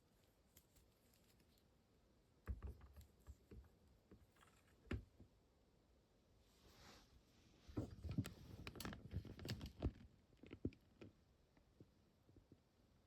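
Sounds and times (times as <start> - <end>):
light clicks and knocks of handling: 2.4 - 5.3, 7.7 - 12.7.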